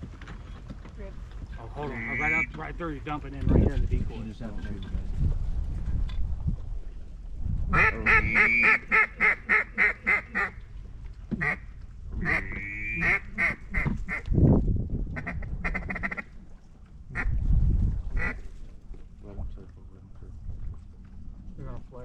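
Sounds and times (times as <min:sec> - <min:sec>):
duck call quacking: 0:01.8 - 0:02.5, 0:07.7 - 0:10.6, 0:11.4 - 0:11.6, 0:12.2 - 0:14.2, 0:15.2 - 0:16.3, 0:18.2 - 0:18.4.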